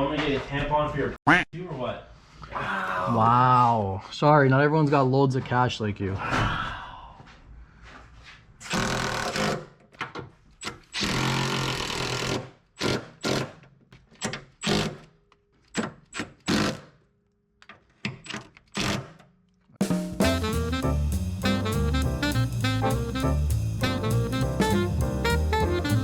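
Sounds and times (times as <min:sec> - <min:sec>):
power tool bursts: 0:08.7 - 0:09.6, 0:11.0 - 0:13.5
background music with steady beat: 0:19.8 - 0:26.0.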